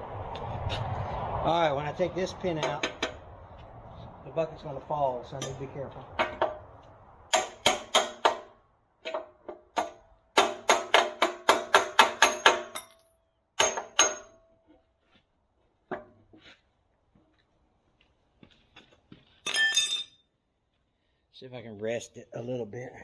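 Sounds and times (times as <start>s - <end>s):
hammer clanging on steel pin: 9.1s - 14.4s, 19.5s - 20.2s.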